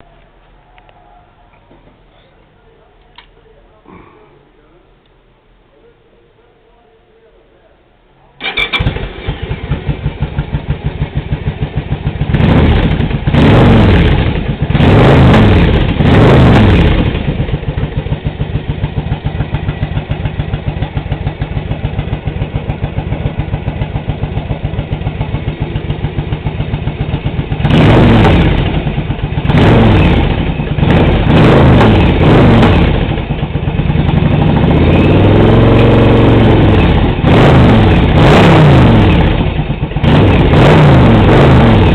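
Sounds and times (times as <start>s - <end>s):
motorcycle engine revving: 8.4s - 41.9s.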